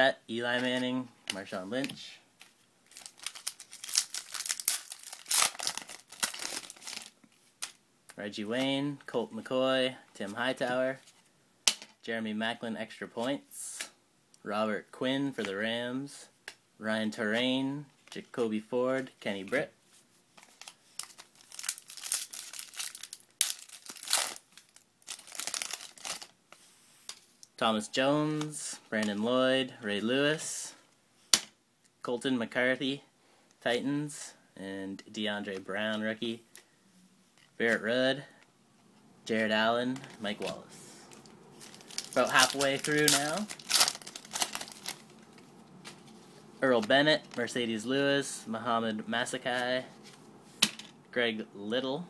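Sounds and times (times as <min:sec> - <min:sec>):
card pack wrapper crinkling: 0:02.9 - 0:07.8, 0:20.4 - 0:26.4, 0:39.9 - 0:46.2.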